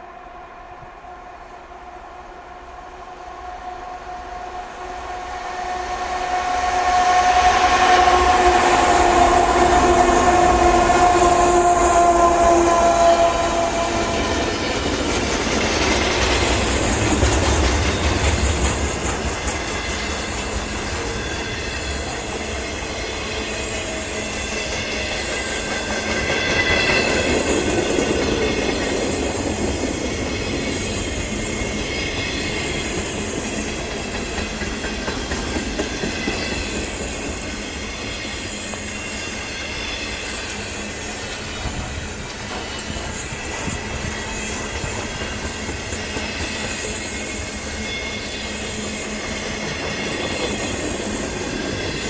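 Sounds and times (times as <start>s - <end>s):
train horn: 0.0s - 15.0s, 16.3s - 28.8s
train cars rumbling past: 0.0s - 52.0s.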